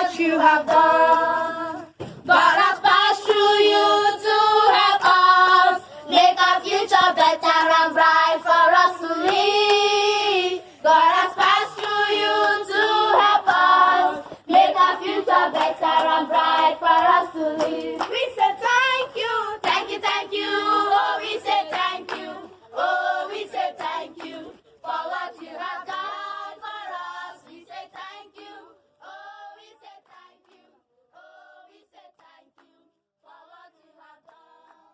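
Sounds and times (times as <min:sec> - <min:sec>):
rhythmic hand clapping: 0:00.0 - 0:30.7
group of voices singing: 0:00.0 - 0:34.9.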